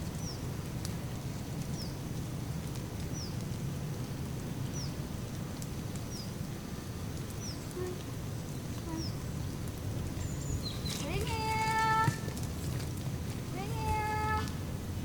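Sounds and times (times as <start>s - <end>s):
steady rain: 0.0s - 15.0s
rain drop ticks: 1.6s - 6.4s, 7.1s - 9.0s.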